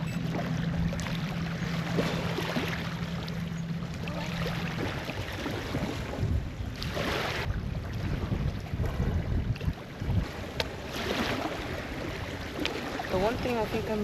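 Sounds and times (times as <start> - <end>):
low steady hum: 0.0 - 8.6
wind buffeting microphone: 4.1 - 14.0.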